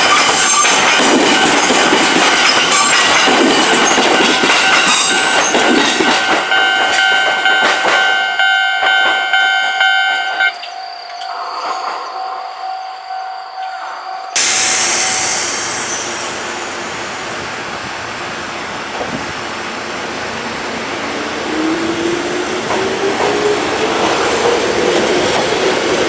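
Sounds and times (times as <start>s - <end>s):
level crossing warning bell ringing: 0.0s - 18.2s
train passing: 0.0s - 26.0s
steady rush of noise: 13.8s - 21.9s.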